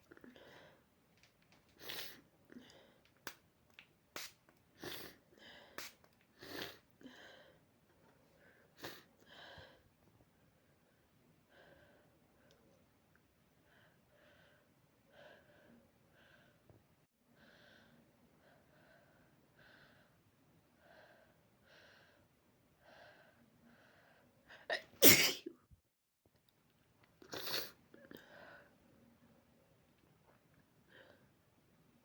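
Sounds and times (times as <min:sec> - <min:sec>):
person sneezing: 0:24.7 - 0:25.5.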